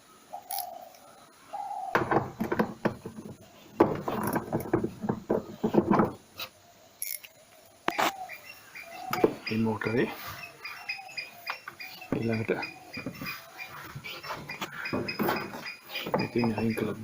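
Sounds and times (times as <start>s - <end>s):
machine parts clattering and knocking: 2.0s - 6.2s.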